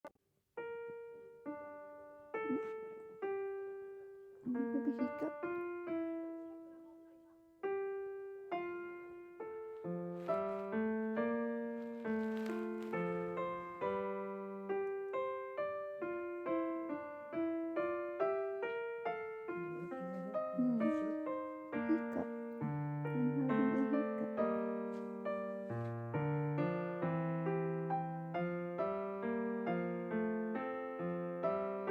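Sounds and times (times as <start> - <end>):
solo piano melody: 0.6 - 31.9.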